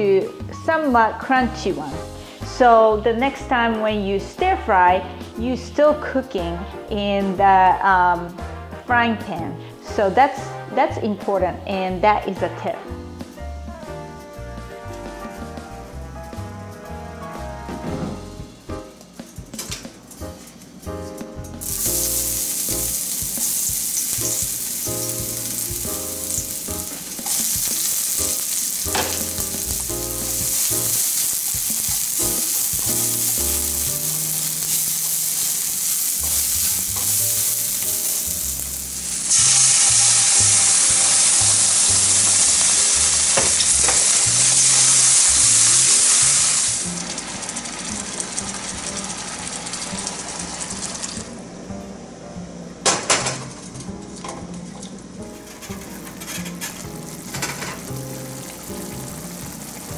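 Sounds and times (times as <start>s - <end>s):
background music with bass line: 10.2s - 20.1s, 24.2s - 31.0s
vegetables sizzling in a frying pan: 21.6s - 51.3s, 55.4s - 59.9s.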